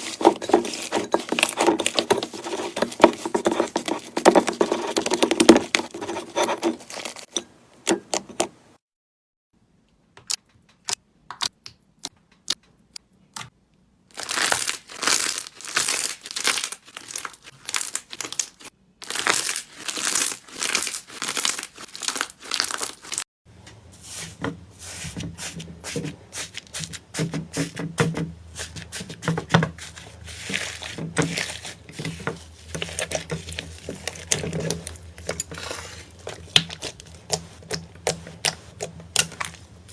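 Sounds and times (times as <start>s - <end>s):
slime crackling and popping: 14.2s - 23.2s.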